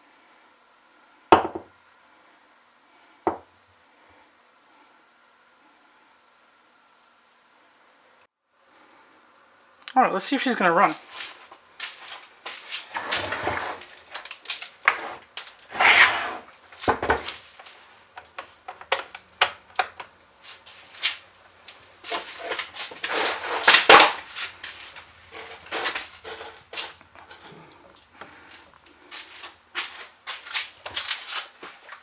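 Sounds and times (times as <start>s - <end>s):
handling clicks and clatter: 13.8s - 15.7s, 17.6s - 20.1s, 22.0s - 27.6s.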